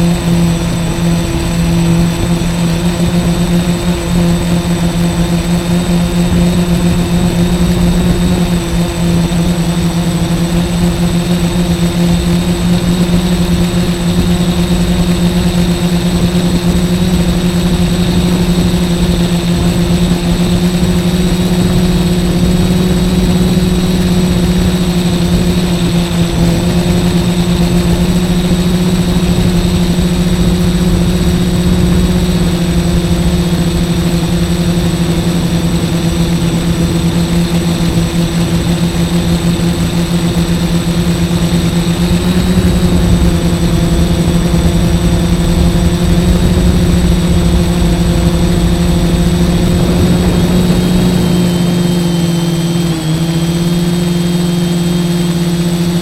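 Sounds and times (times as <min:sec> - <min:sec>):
drone propellers humming: 0:00.0 - 0:56.0
low rumble: 0:42.0 - 0:52.4.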